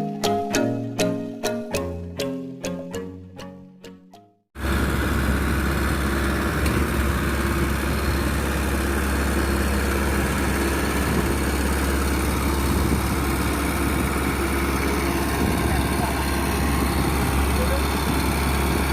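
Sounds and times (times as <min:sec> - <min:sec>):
combine harvester droning: 0:04.6 - 0:18.9.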